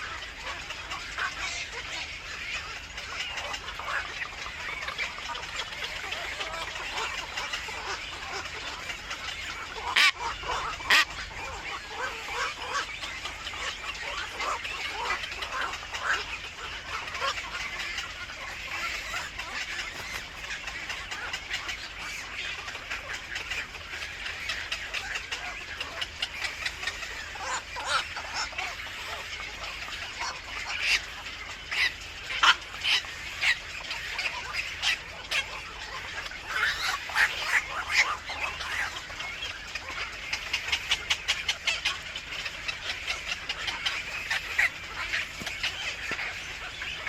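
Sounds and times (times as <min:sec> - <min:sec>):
birds chirping: 0:00.0 - 0:47.0.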